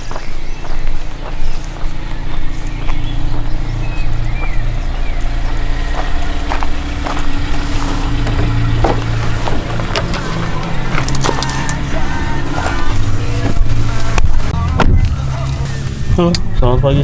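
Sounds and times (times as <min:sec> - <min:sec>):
vehicle engine running: 0:00.0 - 0:17.0
knocks and clicks: 0:04.1 - 0:15.0.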